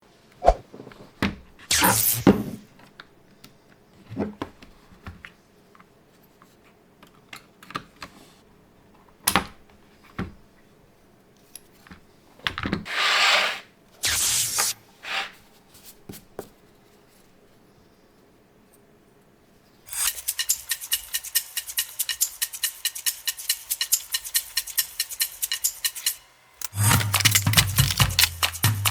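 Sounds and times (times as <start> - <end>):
mechanical keyboard clicks: 23.4 - 28.9.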